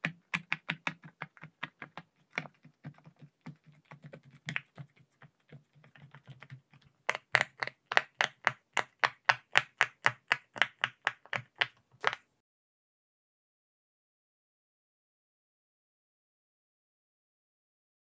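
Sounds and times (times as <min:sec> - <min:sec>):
fidget toy bubbles popping: 0:05.8 - 0:12.2.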